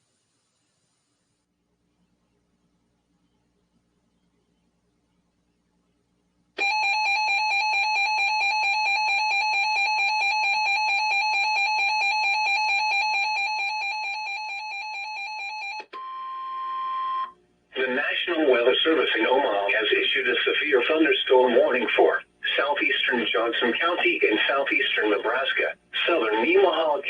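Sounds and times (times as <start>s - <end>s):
fluttering electronic alarm: 6.6s - 15.8s.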